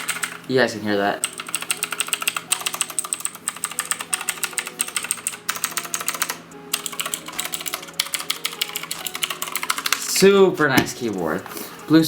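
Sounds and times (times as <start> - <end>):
clicky mechanical keyboard typing: 0.0 - 0.4, 1.2 - 10.3.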